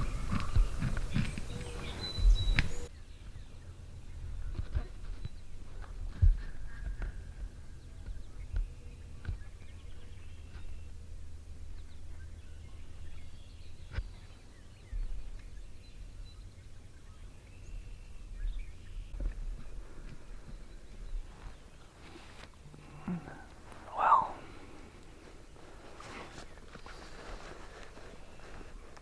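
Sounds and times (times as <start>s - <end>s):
steady low rumble: 0.0s - 21.3s
faint bird calls: 0.0s - 29.0s.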